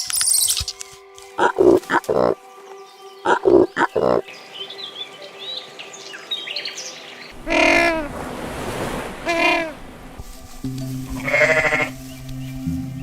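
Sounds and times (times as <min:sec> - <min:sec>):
small birds chirping faintly: 0:00.0 - 0:08.1
loud animal call: 0:01.4 - 0:02.4, 0:03.2 - 0:04.3, 0:07.4 - 0:08.3, 0:09.2 - 0:09.8, 0:11.2 - 0:12.0
loud wavering bleat: 0:07.4 - 0:08.1, 0:11.2 - 0:12.0.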